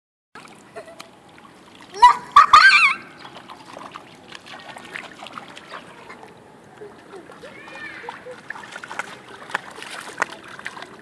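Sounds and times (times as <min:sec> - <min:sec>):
child squealing: 0:02.0 - 0:03.1, 0:07.5 - 0:08.1.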